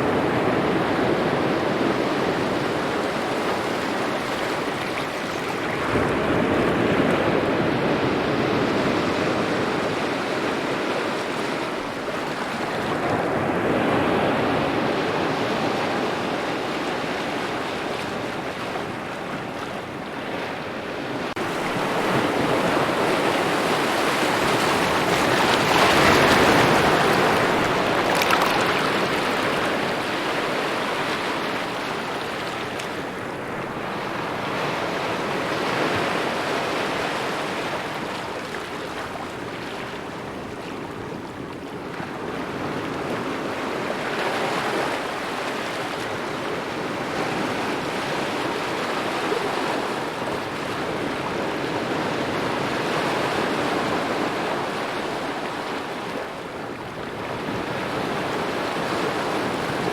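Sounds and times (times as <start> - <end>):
small waves lapping at shore: 0.0 - 59.9.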